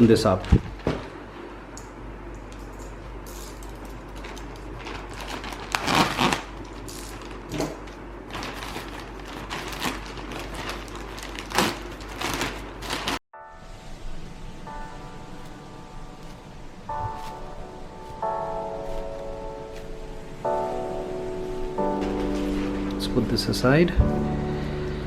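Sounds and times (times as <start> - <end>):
packaging rustles scrapes and clicks: 3.4 - 13.2
steady low hum: 13.6 - 25.0.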